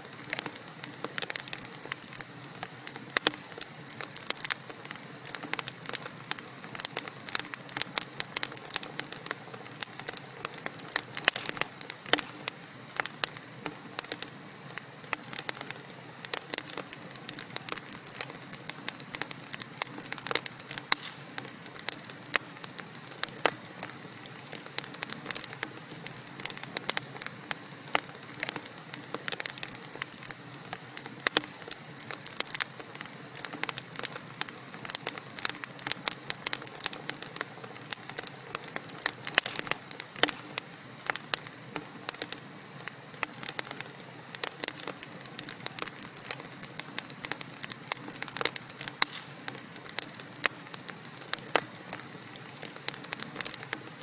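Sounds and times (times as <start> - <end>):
fire crackling and popping: 0.0 - 54.0
soft hiss of flames: 0.0 - 54.0.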